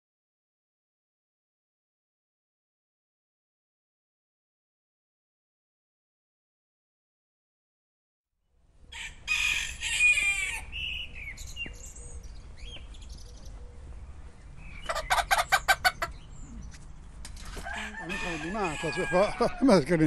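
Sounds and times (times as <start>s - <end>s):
rooster crowing: 8.9s - 10.8s, 17.5s - 19.9s
chickens clucking: 14.8s - 19.9s.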